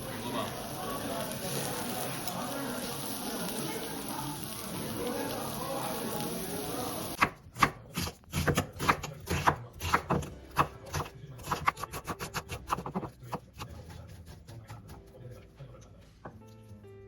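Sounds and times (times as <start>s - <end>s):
knife chopping on cutting board: 7.2s - 15.2s.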